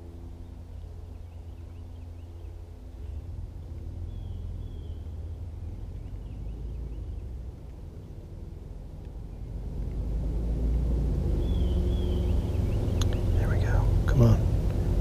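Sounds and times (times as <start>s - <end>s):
distant motor hum: 0.0s - 15.0s
steady low rumble: 0.0s - 15.0s
faint bird chirps: 4.0s - 7.4s, 11.4s - 13.8s.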